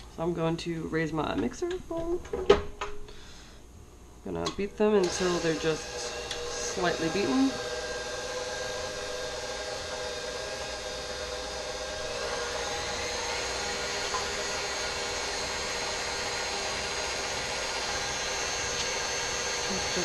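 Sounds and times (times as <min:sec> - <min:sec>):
stand mixer motor whining: 0:04.8 - 0:20.0.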